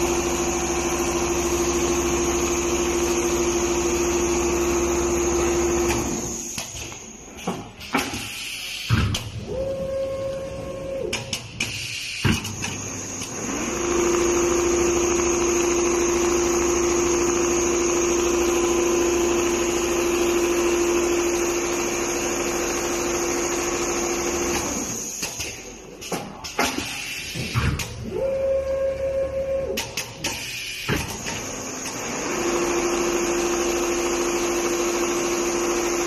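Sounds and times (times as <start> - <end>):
sewing machine motor whine: 0.0 - 6.5, 12.5 - 25.2, 31.3 - 36.0
busy mechanical noise: 0.0 - 36.0.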